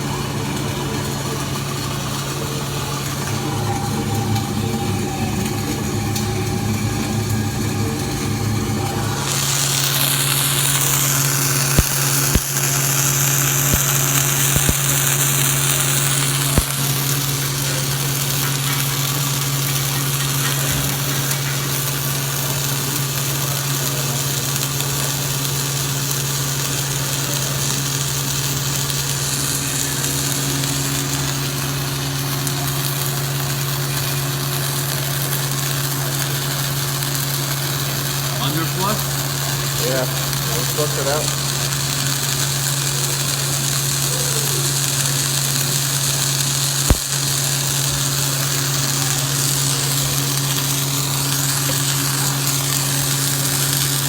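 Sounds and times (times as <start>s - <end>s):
engine humming: 0.0s - 24.5s
hiss: 9.0s - 54.0s.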